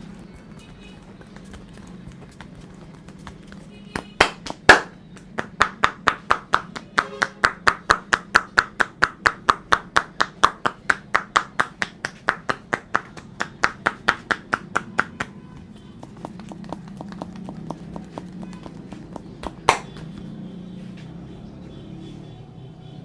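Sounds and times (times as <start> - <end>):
hands slapping head: 1.3 - 20.3.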